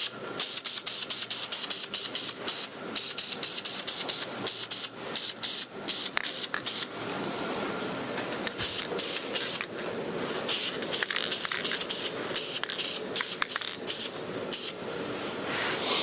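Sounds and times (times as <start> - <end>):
spray paint can hissing: 10.5 - 14.8.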